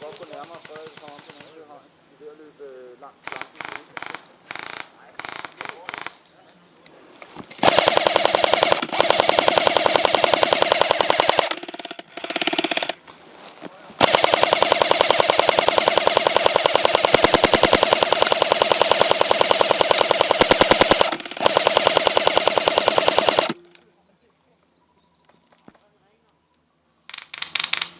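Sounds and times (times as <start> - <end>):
airsoft gun firing full auto: 7.6 - 13.0, 14.0 - 23.7, 27.1 - 27.9.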